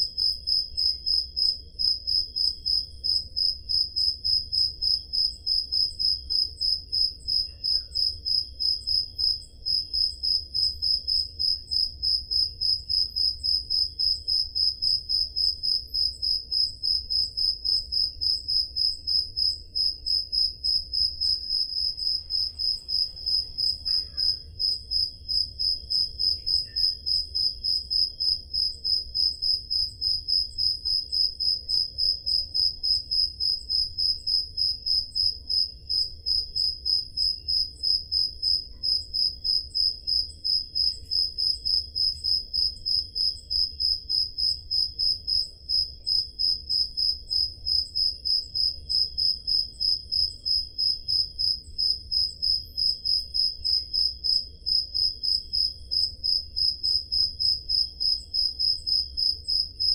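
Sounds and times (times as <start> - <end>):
faint crickets chirping: 0.0 - 59.9
loud cricket chirping: 0.0 - 59.9.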